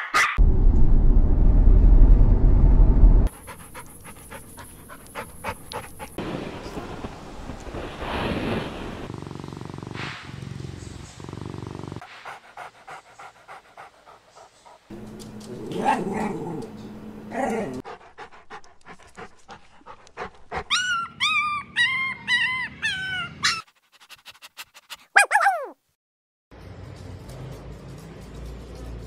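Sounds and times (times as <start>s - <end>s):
puppy panting: 3.3s - 6.2s, 12.1s - 15.5s, 17.8s - 21.1s
puppy whimpering: 20.7s - 23.6s.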